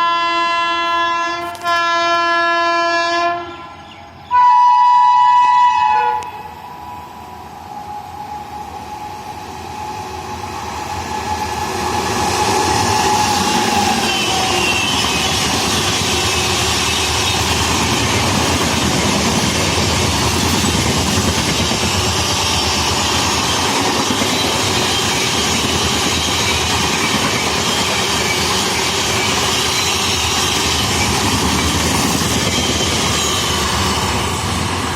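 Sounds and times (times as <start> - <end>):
train passing at high speed: 0.0 - 34.9.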